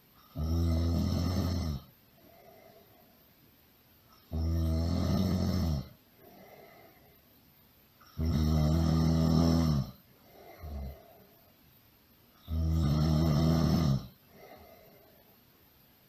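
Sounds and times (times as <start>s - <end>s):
loud snoring: 0.3s - 1.9s, 4.3s - 6.0s, 8.1s - 11.1s, 12.4s - 14.5s
soft breath: 2.1s - 3.4s, 6.1s - 7.5s, 9.9s - 11.8s, 14.1s - 15.8s
snort: 8.0s - 11.3s, 12.4s - 15.0s.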